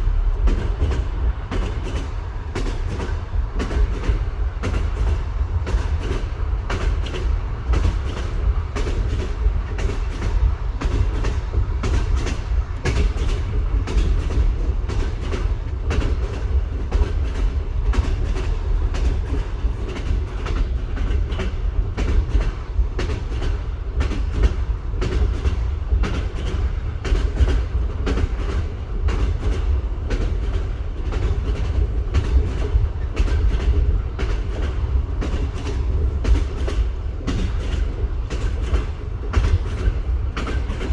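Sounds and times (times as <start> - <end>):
low rumble of running train: 0.0 - 40.9
train wheels clattering over joints: 0.0 - 40.9.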